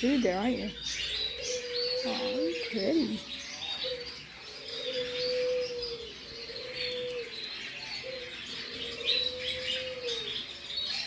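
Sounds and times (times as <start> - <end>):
caged birds chirping: 0.0 - 11.0
low cooing call: 1.3 - 3.2, 3.8 - 7.4, 8.0 - 10.4.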